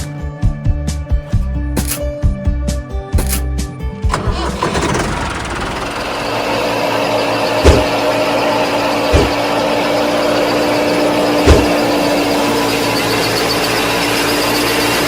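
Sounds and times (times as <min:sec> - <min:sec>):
sharp knocks: 0:07.6 - 0:08.0, 0:09.1 - 0:09.4, 0:11.4 - 0:11.8.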